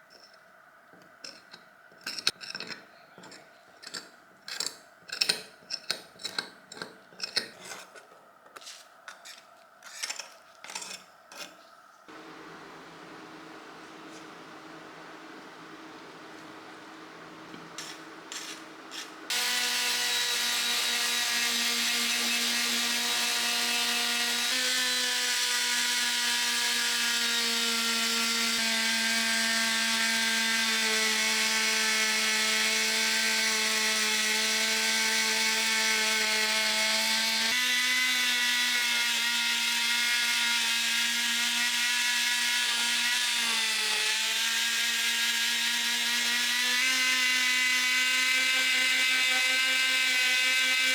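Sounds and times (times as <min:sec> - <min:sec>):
power tool motor whine: 0:19.3 - 0:27.5.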